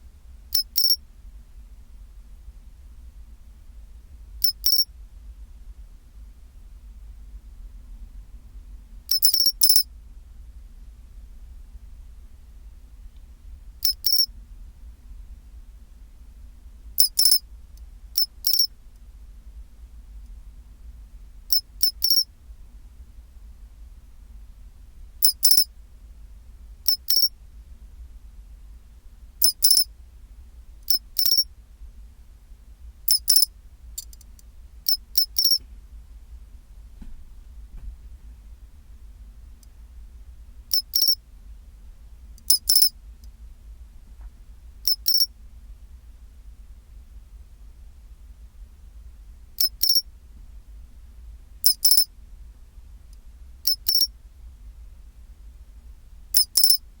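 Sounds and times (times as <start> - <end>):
faint low hum: 0.0 - 57.0
cricket chirping: 0.5 - 1.0, 4.4 - 4.9, 9.1 - 9.9, 13.8 - 14.3, 17.0 - 17.4, 18.2 - 18.7, 21.5 - 22.3, 25.2 - 25.7, 26.8 - 27.3, 29.4 - 29.9, 30.9 - 31.5, 33.1 - 34.2, 34.9 - 35.6, 40.7 - 41.2, 42.5 - 42.9, 44.8 - 45.3, 49.6 - 50.1, 51.6 - 52.1, 53.6 - 54.1, 56.4 - 56.8.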